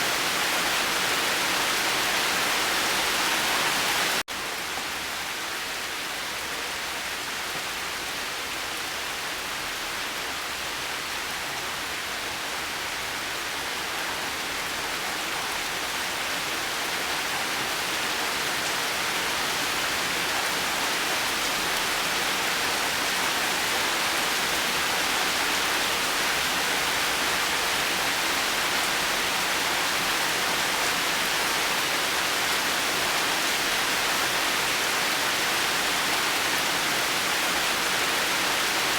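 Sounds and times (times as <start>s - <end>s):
heavy rain: 0.0s - 38.9s.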